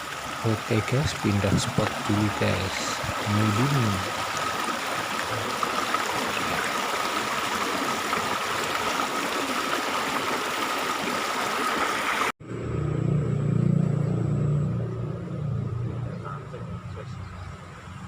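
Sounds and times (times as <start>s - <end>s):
river water rushing: 0.0s - 12.3s
low engine rumble: 12.4s - 18.0s.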